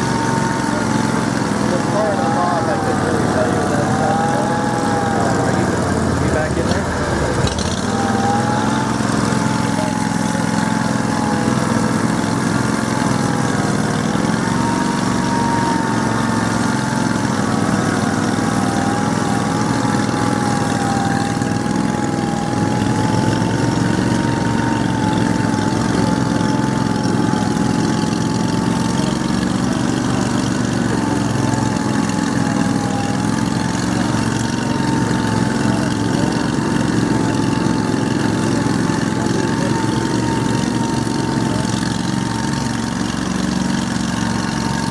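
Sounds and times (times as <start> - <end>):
atv engine running: 0.0 - 44.9.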